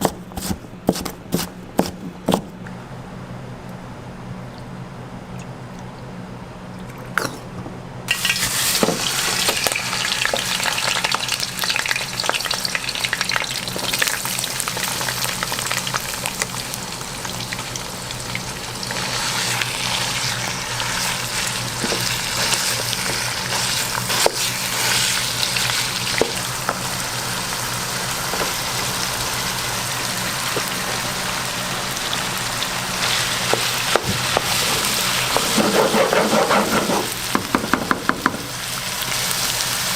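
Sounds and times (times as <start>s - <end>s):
food sizzling in a pan: 8.1s - 36.4s, 38.2s - 39.9s.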